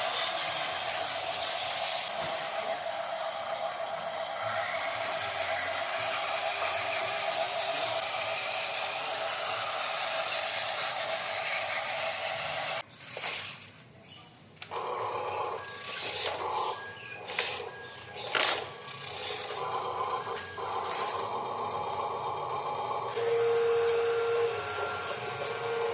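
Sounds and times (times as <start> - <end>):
electric gear motors whirring: 0.0 - 13.8, 14.6 - 25.9.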